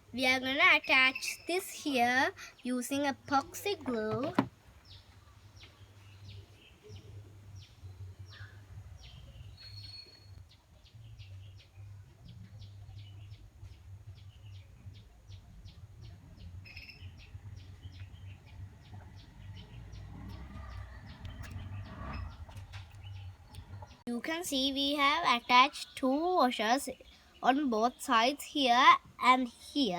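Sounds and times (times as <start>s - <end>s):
small bird chirping: 0.6s - 24.0s.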